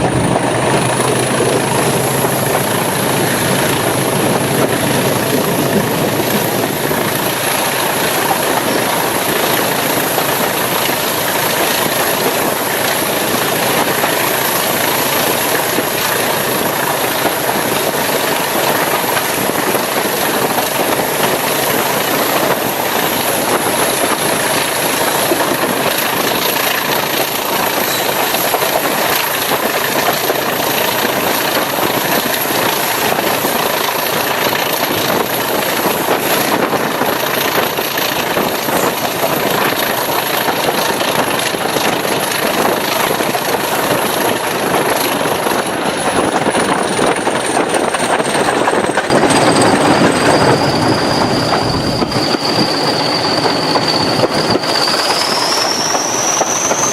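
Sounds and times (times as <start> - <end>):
diesel locomotive engine running: 0.0 - 56.9
high whistle: 49.2 - 56.9
lower whistle: 49.2 - 56.9.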